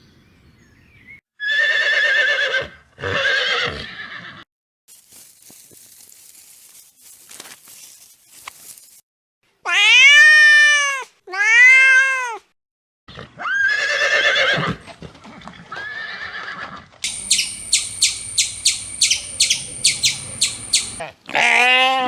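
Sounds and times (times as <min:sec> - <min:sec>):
high arching animal calls: 0:17.0 - 0:21.0
rapid clicking chirp: 0:17.0 - 0:21.0
rough animal calls: 0:17.0 - 0:21.1.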